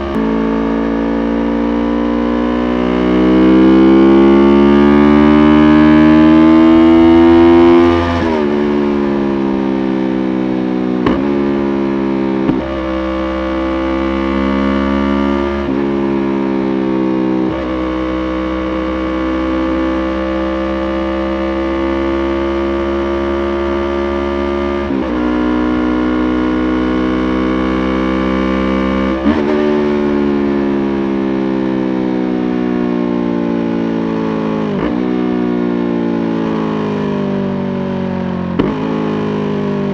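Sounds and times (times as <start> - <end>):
motorcycle engine shifting gears: 0.0 - 25.3, 37.8 - 39.9.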